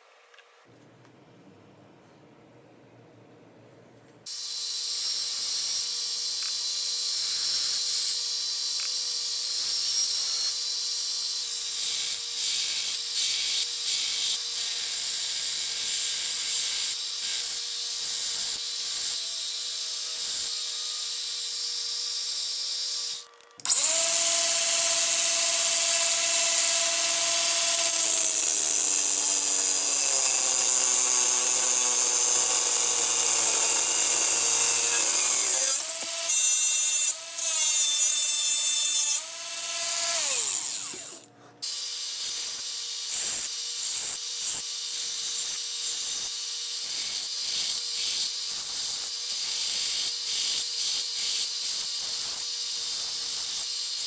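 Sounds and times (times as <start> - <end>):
small electric power tool running: 4.3 - 54.0.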